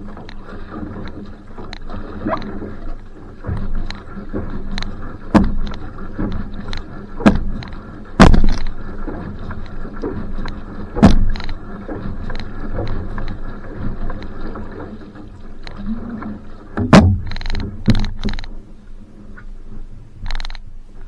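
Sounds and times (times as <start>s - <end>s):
paddle strokes: 0.0s - 21.0s
water rushing along hull: 0.0s - 21.0s
loud knocks: 8.2s - 8.7s, 16.8s - 18.2s.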